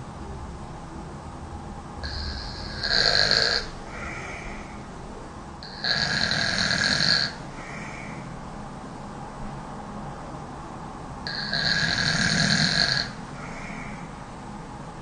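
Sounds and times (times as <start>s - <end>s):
woman snoring: 2.0s - 4.6s, 5.6s - 7.4s, 11.3s - 13.2s.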